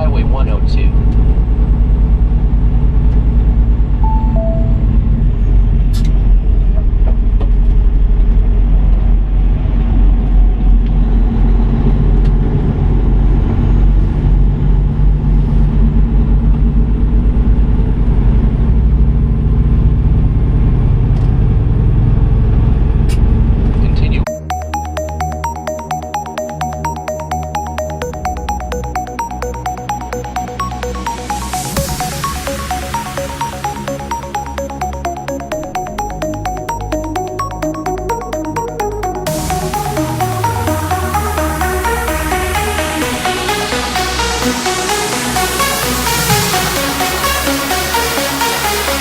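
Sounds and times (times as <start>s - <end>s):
truck engine and road drone: 0.0s - 24.2s
two-note falling beep: 4.0s - 5.3s, 24.3s - 47.6s.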